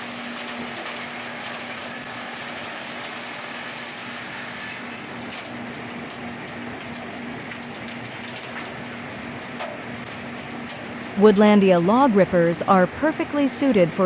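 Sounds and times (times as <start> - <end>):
sawmill running with rushing noise: 0.0 - 10.4.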